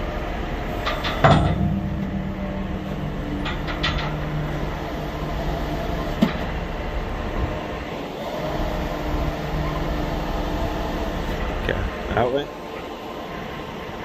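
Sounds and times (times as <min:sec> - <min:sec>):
diesel engine running: 0:00.0 - 0:14.0
sharp metallic clank: 0:00.8 - 0:04.9.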